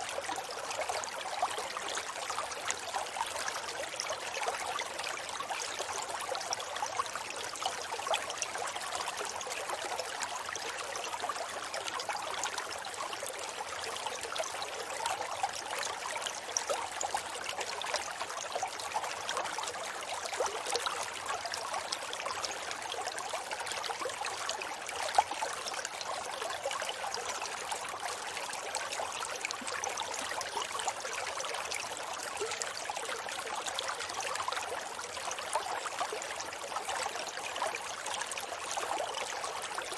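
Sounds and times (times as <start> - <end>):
river water rushing and babbling: 0.0 - 39.9.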